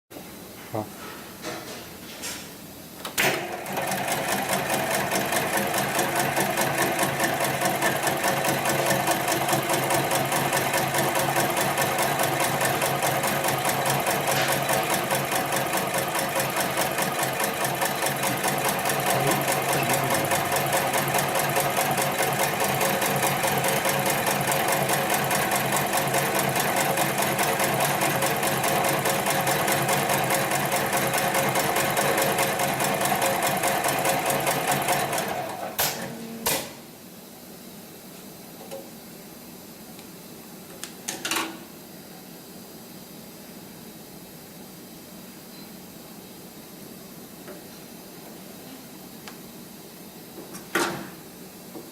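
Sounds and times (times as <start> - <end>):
sewing machine starting clunk: 3.1 - 36.7
sewing machine stitching: 3.2 - 36.1.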